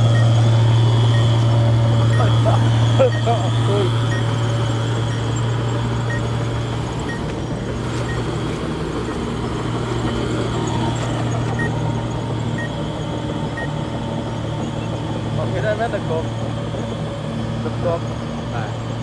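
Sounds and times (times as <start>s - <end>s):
reversing alarm beeps: 0.0s - 7.3s, 10.2s - 16.5s
diesel engine running: 0.0s - 19.0s.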